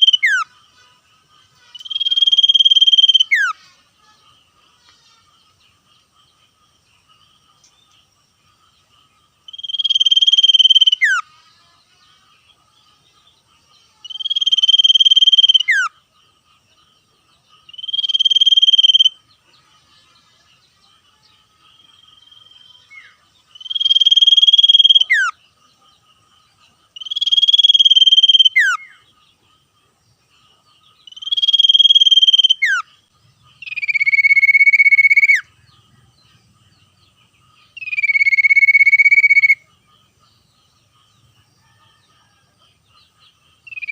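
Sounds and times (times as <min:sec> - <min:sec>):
bird trilling: 0:00.0 - 0:00.5, 0:01.8 - 0:03.6, 0:09.5 - 0:11.2, 0:14.0 - 0:15.9, 0:17.7 - 0:19.1, 0:22.2 - 0:25.4, 0:27.0 - 0:29.0, 0:31.0 - 0:32.9, 0:33.6 - 0:35.6, 0:37.7 - 0:39.6, 0:43.7 - 0:43.9.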